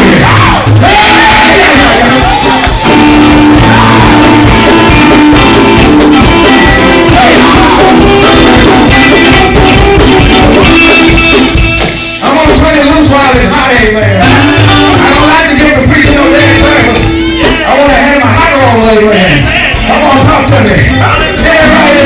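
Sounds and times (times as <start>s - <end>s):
live praise music with singing: 0.0s - 22.0s.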